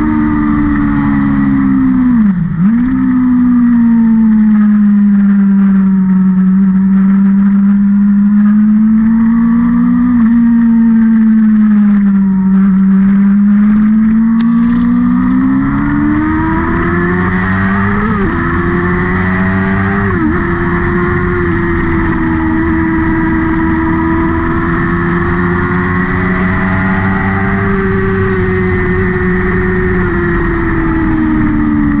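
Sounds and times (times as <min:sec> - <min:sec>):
race car engine revving: 0:06.7 - 0:32.0.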